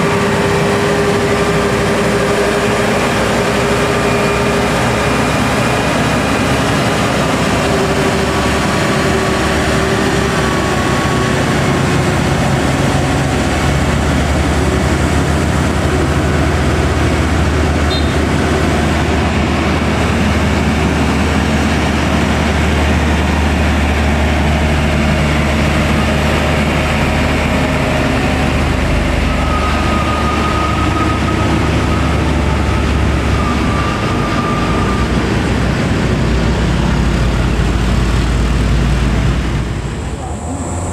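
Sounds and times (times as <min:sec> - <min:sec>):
diesel truck engine pulling uphill: 0:00.0 - 0:40.9.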